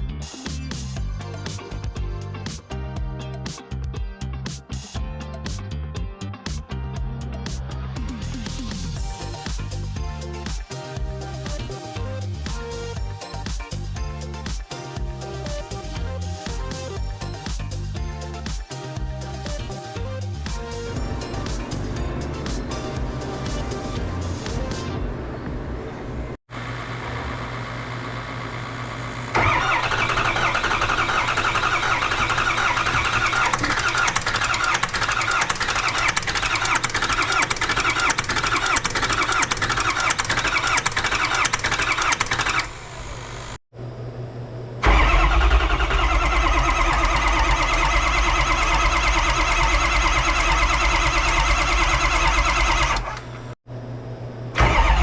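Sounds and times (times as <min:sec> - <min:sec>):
diesel engine starting and running: 0:19.2 - 0:43.6, 0:44.8 - 0:53.6, 0:54.6 - 0:55.0.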